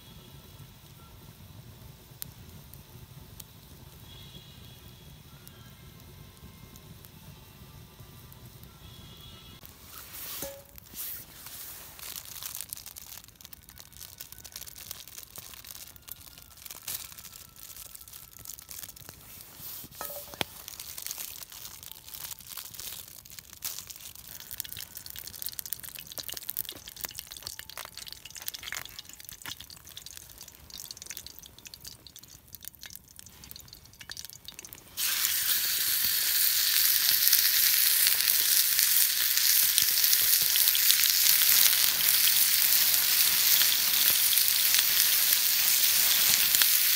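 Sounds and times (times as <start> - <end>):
food sizzling in a hot pan: 9.7 - 46.9
faint crackling and clicks: 20.3 - 35.0.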